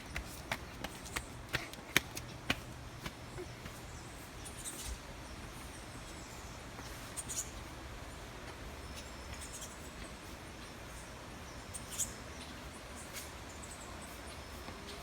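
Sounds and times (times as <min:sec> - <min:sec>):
footsteps on a path: 0:00.0 - 0:04.4.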